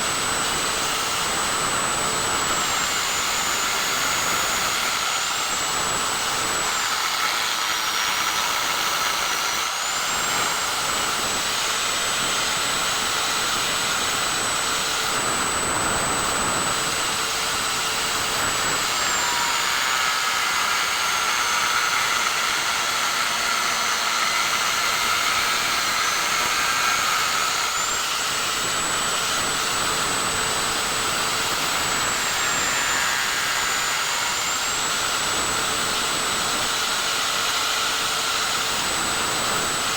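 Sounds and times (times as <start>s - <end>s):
electric motor whining: 0.0s - 39.9s.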